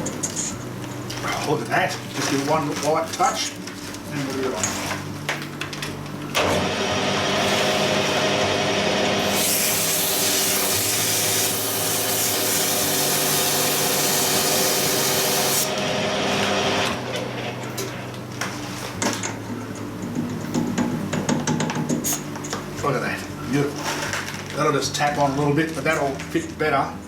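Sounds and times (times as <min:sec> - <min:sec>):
lathe motor hum: 0:06.4 - 0:17.6
metal cutting hiss: 0:09.2 - 0:15.7.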